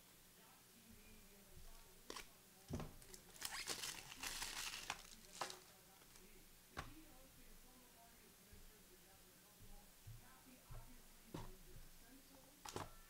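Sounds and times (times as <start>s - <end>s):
plastic wrapper crinkling: 3.0s - 6.3s.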